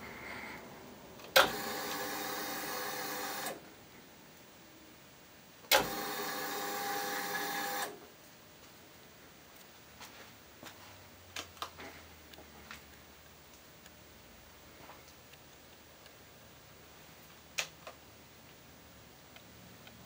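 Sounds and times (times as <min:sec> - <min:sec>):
fuel pump buzzing: 0:01.3 - 0:03.6.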